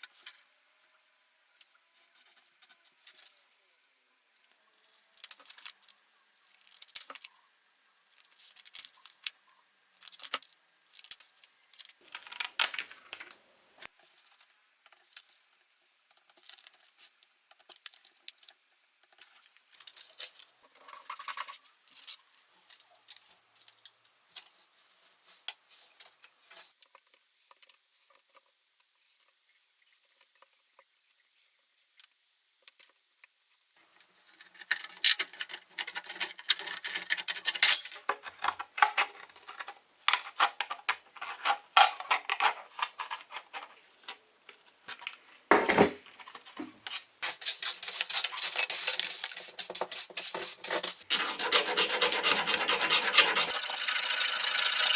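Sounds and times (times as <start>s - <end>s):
tools clinking and scraping: 34.8s - 39.8s, 45.5s - 51.0s.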